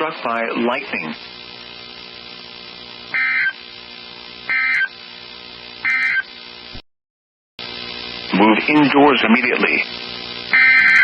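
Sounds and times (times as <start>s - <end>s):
radio receiver hum: 0.0s - 6.8s, 7.6s - 11.0s
buzzy digital data tone bursts: 1.1s - 5.1s, 5.8s - 6.6s, 7.6s - 11.0s.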